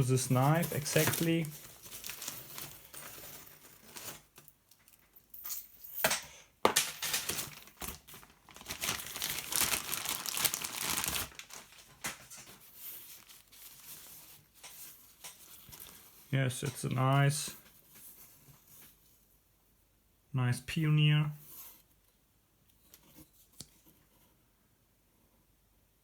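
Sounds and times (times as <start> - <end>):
packaging crinkling: 0.0 - 5.1, 7.2 - 14.7.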